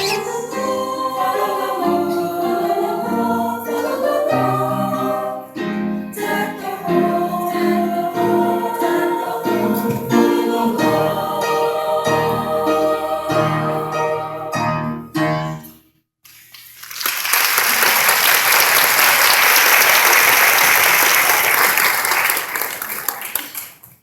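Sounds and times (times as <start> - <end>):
school chorus singing: 0.0 - 15.0.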